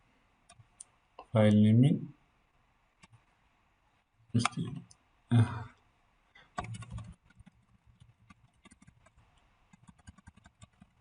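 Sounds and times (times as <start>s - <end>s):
typing on computer keyboard: 6.6s - 11.0s.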